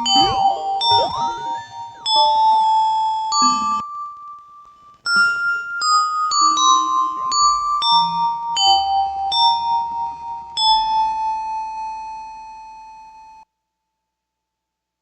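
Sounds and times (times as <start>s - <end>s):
bell-like keyboard notes with delay: 0.0s - 4.2s, 5.1s - 11.4s.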